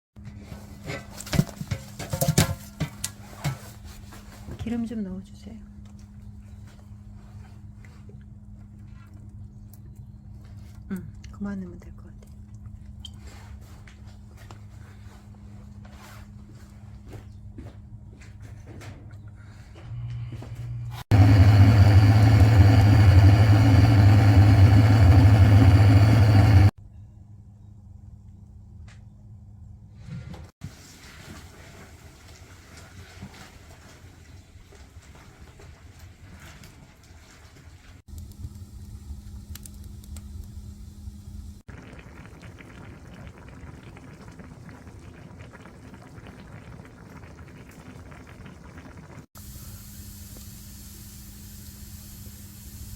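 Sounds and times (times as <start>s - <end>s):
steady low hum: 19.2s - 30.0s
engine running steadily: 19.8s - 26.7s
broth boiling and bubbling: 20.9s - 26.8s, 30.6s - 52.9s.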